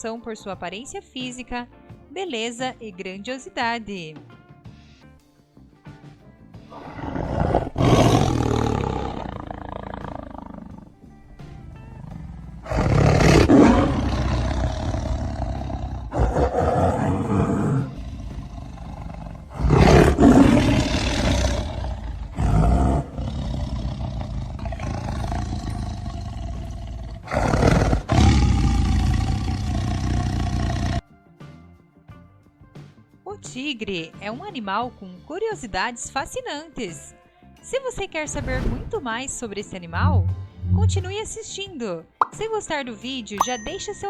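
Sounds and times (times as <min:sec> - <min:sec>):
background music: 0:00.0 - 0:44.0
tiger roaring: 0:06.7 - 0:31.0, 0:39.9 - 0:41.3.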